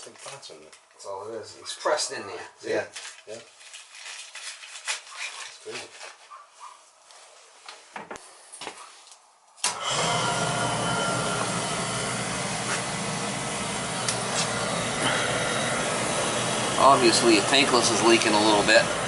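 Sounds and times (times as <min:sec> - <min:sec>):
oil burner running: 0:09.6 - 0:19.0.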